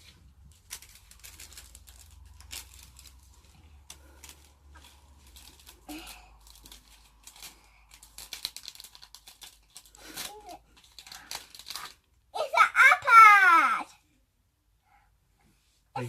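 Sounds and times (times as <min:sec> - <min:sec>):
packaging crinkling and tearing: 0:00.0 - 0:12.2.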